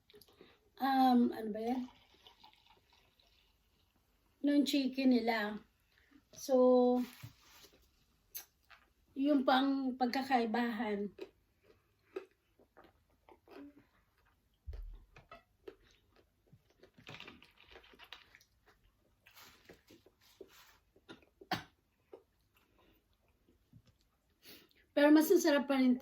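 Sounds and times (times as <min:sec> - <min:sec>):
chewing and crunching: 0:11.0 - 0:24.4.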